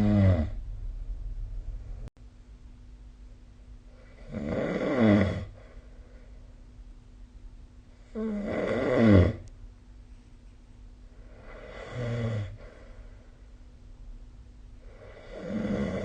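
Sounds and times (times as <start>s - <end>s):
person snoring: 0.0s - 0.6s, 4.0s - 5.8s, 8.0s - 9.4s, 11.2s - 13.0s, 14.8s - 16.0s.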